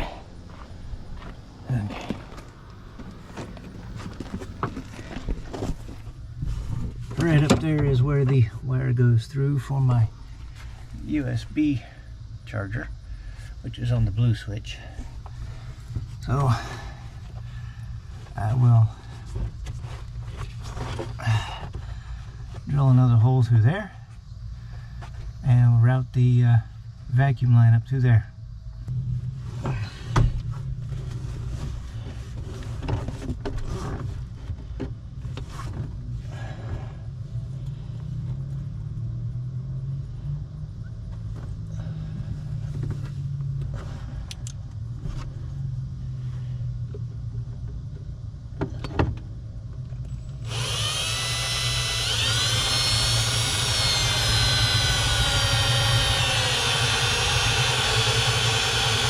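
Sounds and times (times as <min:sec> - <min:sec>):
steady low hum: 0:00.0 - 0:59.0
power drill drilling: 0:50.4 - 0:59.0.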